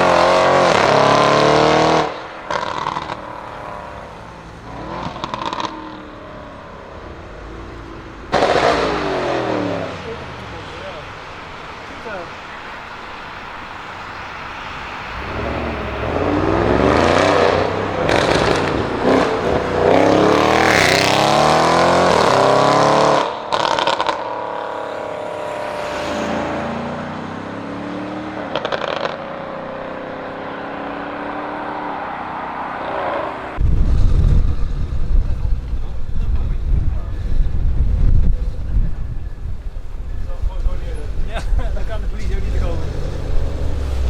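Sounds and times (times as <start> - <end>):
car engine accelerating: 0.0 - 44.0
exhaust crackles and pops: 10.0 - 21.2, 33.6 - 44.0.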